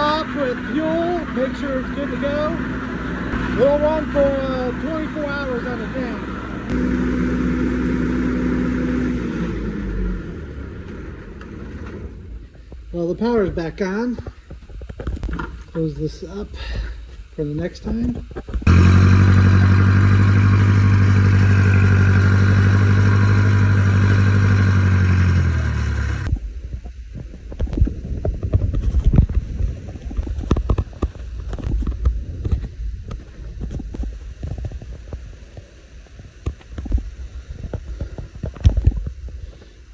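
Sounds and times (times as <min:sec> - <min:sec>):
diesel generator humming: 0:00.0 - 0:14.3, 0:18.6 - 0:26.5.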